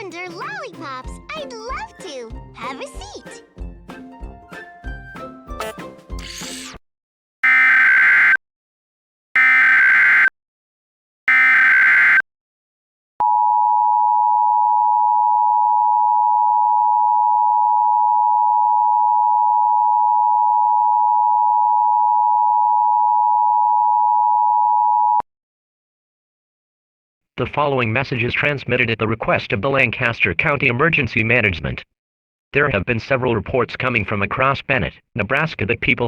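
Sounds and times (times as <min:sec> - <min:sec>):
screechy digital data tones: 0:06.2 - 0:06.8, 0:09.4 - 0:10.3, 0:11.3 - 0:12.2.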